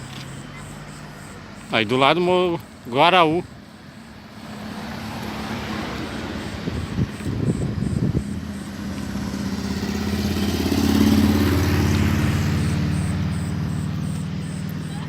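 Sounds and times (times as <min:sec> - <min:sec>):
vehicle engine passing by: 0:03.8 - 0:15.0.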